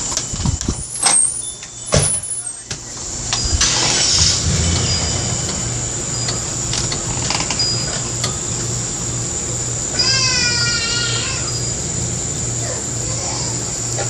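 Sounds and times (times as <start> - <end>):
vehicle engine running: 2.8 - 10.0, 11.2 - 14.0.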